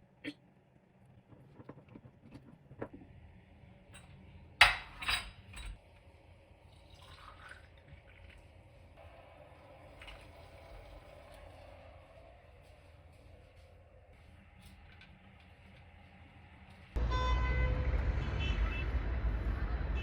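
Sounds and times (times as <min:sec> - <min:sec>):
glassware and dishes clinking: 0:04.0 - 0:05.8.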